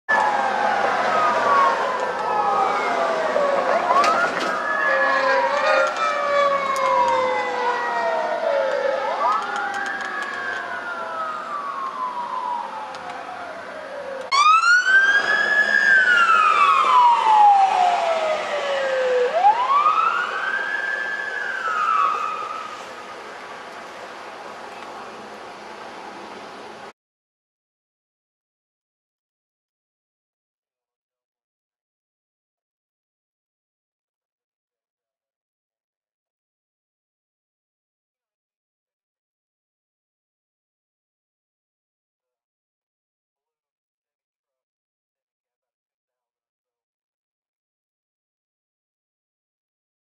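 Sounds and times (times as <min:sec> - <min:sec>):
nearer siren wailing: 0:00.1 - 0:25.2
emergency sirens wailing: 0:00.1 - 0:26.9.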